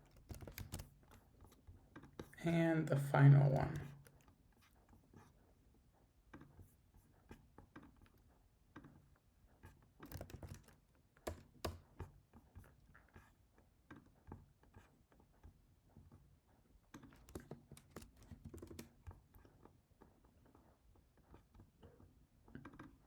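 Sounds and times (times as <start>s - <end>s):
typing on keyboard: 0.0s - 1.2s, 10.0s - 11.9s, 17.1s - 19.2s.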